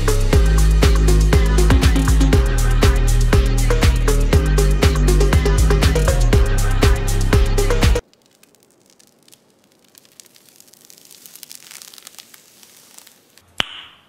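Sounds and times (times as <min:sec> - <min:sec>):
upbeat dance music: 0:00.0 - 0:08.0
faint rustling: 0:08.0 - 0:13.5
small ticks: 0:08.0 - 0:13.5.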